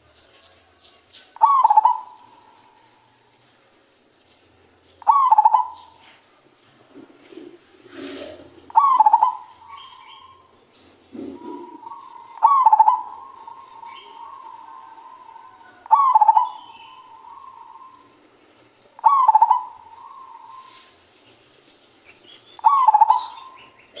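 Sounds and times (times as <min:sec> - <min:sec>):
faint high chirps: 0:00.0 - 0:24.0
dove cooing: 0:01.4 - 0:02.8, 0:05.0 - 0:06.1, 0:06.9 - 0:18.4, 0:19.0 - 0:21.0, 0:22.2 - 0:24.0.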